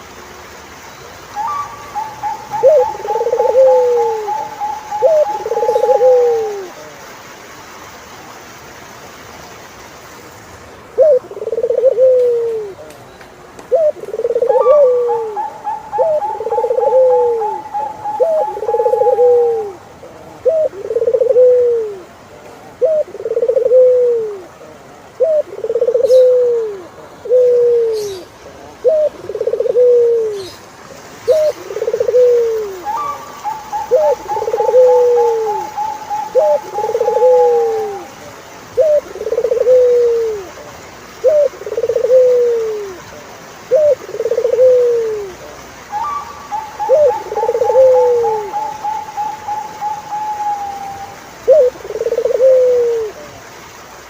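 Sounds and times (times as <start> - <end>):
bird trilling: 1.4 - 6.6
doves cooing: 1.4 - 7.0, 10.9 - 12.9, 13.7 - 30.6, 31.2 - 53.4.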